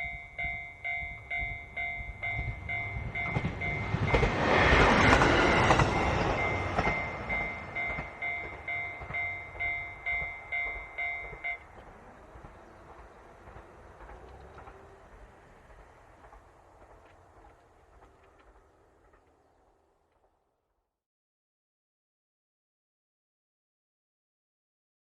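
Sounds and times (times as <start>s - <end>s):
level crossing bell ringing: 0.0s - 4.8s, 5.4s - 11.8s
diesel railcar passing: 0.0s - 20.6s.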